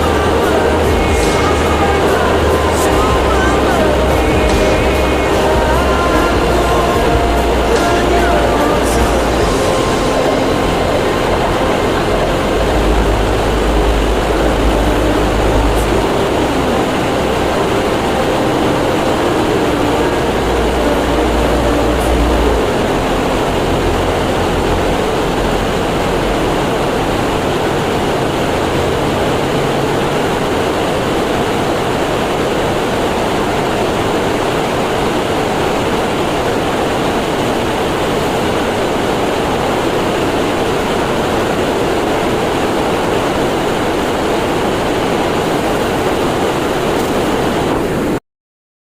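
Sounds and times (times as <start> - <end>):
deep low hum: 0.0 - 30.8
machinery rumble and hiss: 0.0 - 48.2.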